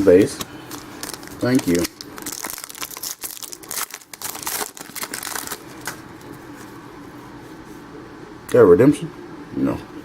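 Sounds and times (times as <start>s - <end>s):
trading cards clicking and rustling: 0.0s - 6.8s.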